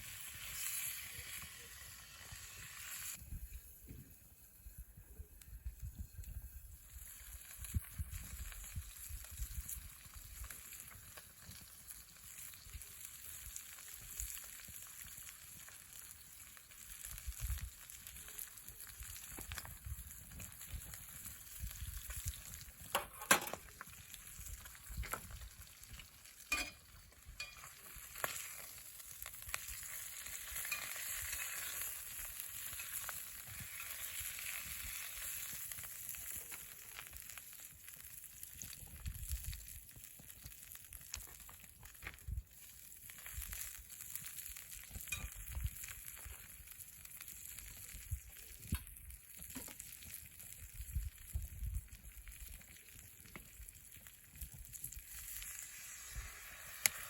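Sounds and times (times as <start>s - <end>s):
campfire sizzling and crackling: 0.0s - 57.0s
sharp pops of fire: 5.7s - 57.0s.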